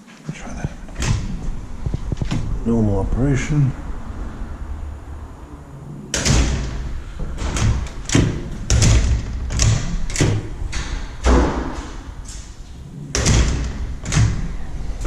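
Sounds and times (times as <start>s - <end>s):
door latch thuds and knocks: 6.1s - 12.5s, 13.1s - 14.6s.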